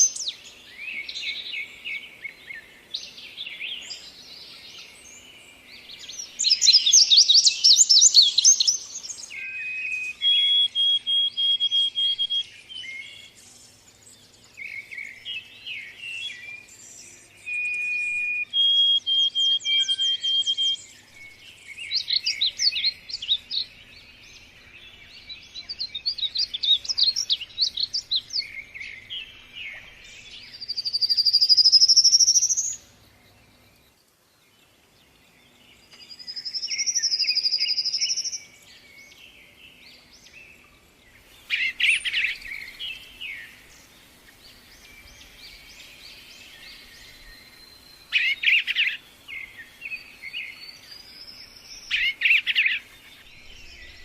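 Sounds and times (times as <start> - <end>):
bird whistling: 9.4 - 13.0, 17.4 - 20.9, 46.8 - 49.0, 51.7 - 52.8
birds chattering: 36.7 - 54.0
birds trilling: 41.2 - 54.0.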